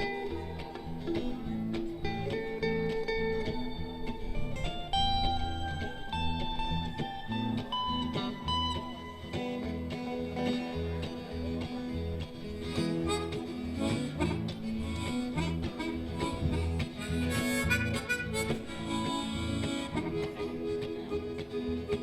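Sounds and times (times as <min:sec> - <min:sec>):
guitar: 0:00.0 - 0:22.0
pulsing bass beat: 0:04.5 - 0:22.0
harmonica: 0:07.7 - 0:22.0.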